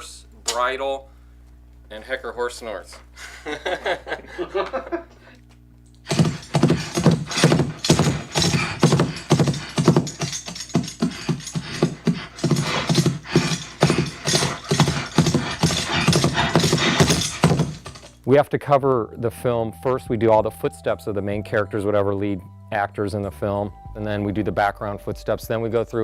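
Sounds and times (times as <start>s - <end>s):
horse snorts: 6.1s - 18.1s
hooves galloping: 6.1s - 18.2s
jingling bridle: 6.1s - 18.2s.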